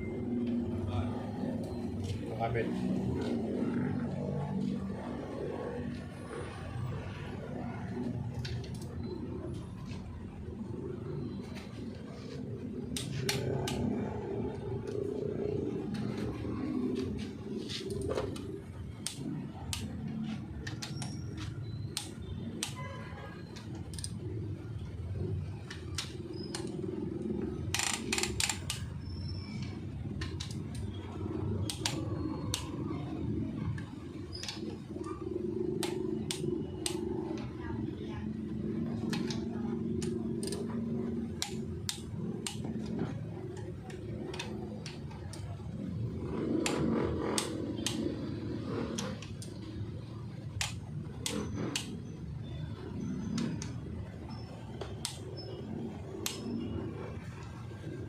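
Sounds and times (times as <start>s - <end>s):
steady low hum: 0.0s - 58.0s
tools clicking and tapping on metal: 17.8s - 22.8s.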